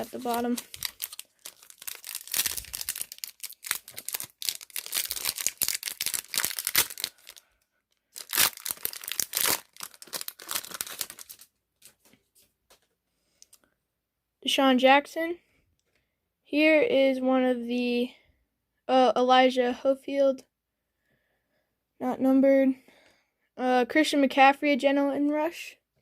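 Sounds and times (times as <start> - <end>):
wrapper tearing and crinkling: 0.0 - 7.4, 8.1 - 11.9.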